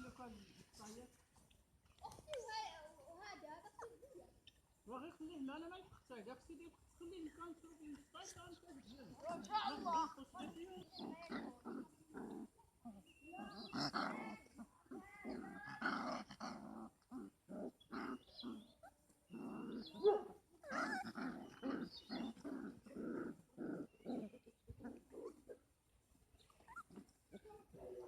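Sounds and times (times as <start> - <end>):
puppies growling and yapping: 8.8 - 28.0.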